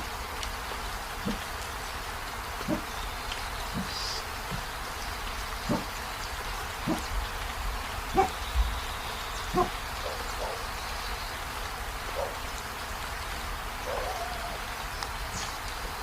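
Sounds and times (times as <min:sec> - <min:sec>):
steady rain falling: 0:00.0 - 0:16.0
short animal calls: 0:13.8 - 0:14.7.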